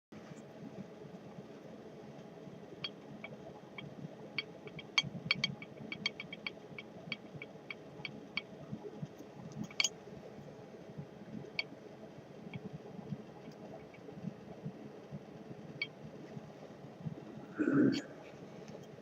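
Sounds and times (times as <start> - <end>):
engine valve ticking: 4.4 - 8.5, 9.5 - 9.9.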